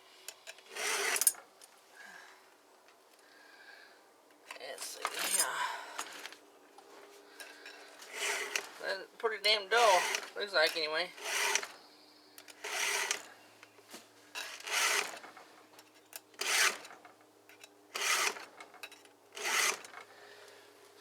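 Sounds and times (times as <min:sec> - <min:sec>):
hand file rasping on chain: 0:09.7 - 0:11.7.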